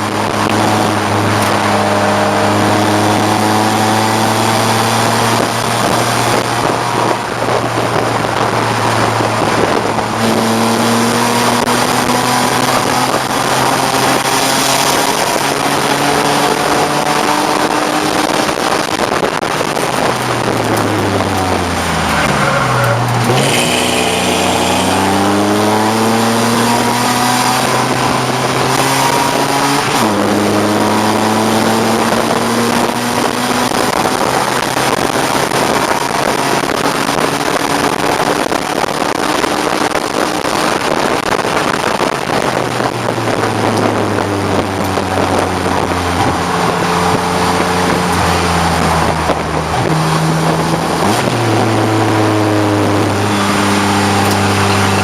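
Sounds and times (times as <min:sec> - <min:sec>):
race car engine revving: 0:00.0 - 0:55.0
rushing wind noise at speed: 0:00.0 - 0:55.0.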